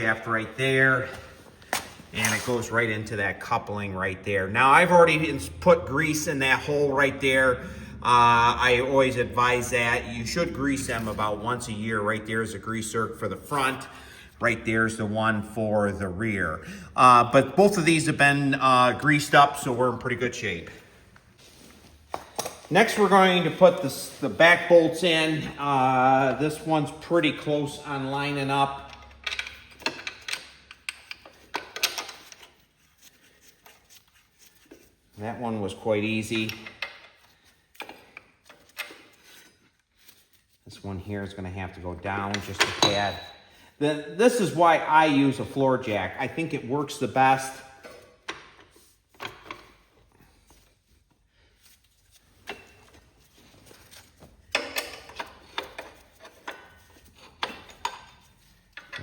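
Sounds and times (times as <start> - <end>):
metal tools clicking and knocking: 28.7 - 32.6, 42.3 - 43.4, 54.4 - 59.0
metallic clicks and taps of bolt: 28.8 - 32.5.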